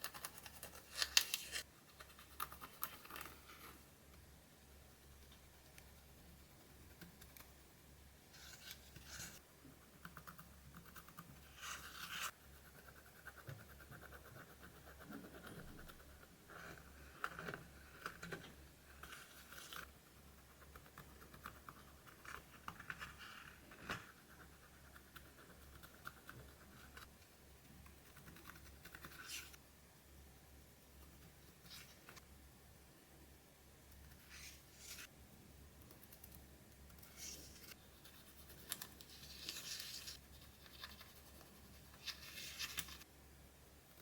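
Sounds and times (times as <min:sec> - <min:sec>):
fine scratching strokes: 0:08.3 - 0:09.4, 0:34.2 - 0:35.1, 0:37.0 - 0:43.1.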